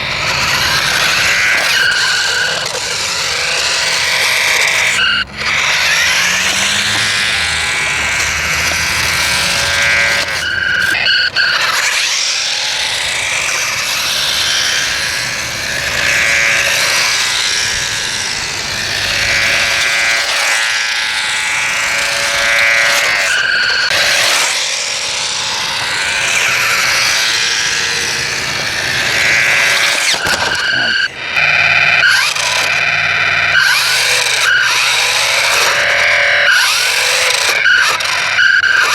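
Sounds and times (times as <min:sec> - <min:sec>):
warbling electronic toy tones: 0:26.3 - 0:38.9.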